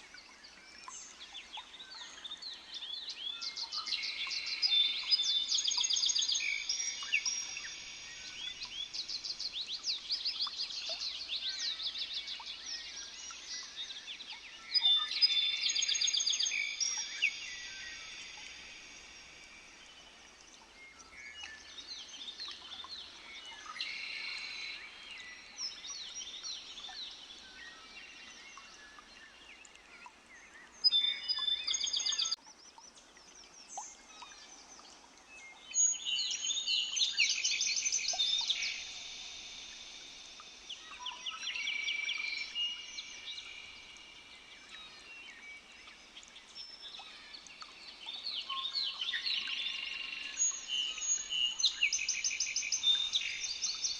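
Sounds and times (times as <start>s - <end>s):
songbirds singing: 0.0s - 53.9s.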